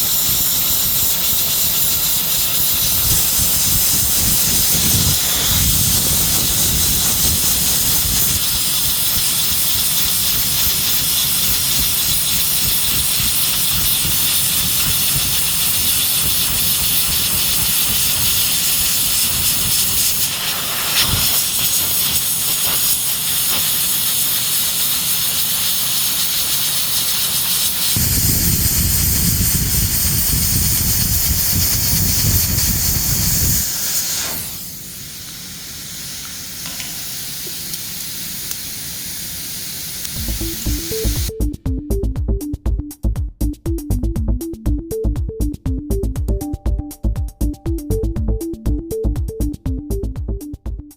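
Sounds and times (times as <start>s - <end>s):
hot-air gun hissing: 0.0s - 41.3s
low rumble: 40.2s - 50.9s.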